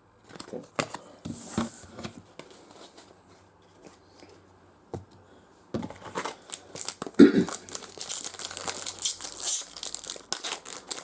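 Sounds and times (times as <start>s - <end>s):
wrapper tearing and crinkling: 6.1s - 11.0s.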